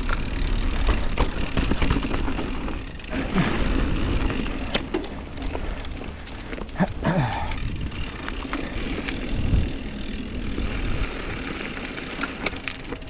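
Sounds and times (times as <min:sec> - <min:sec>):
bike rattling over bumps: 0:00.0 - 0:13.0
bike rolling over dirt trail: 0:00.0 - 0:13.0
wind buffeting microphone: 0:06.8 - 0:11.6.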